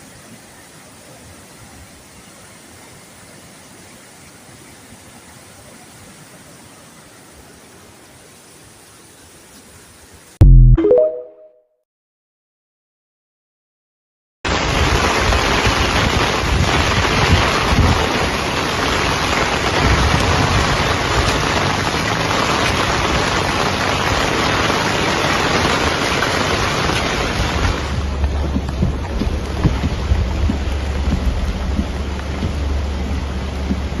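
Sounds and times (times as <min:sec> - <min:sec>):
rushing water: 0:00.0 - 0:10.4, 0:14.5 - 0:34.0
low rumble: 0:27.4 - 0:34.0.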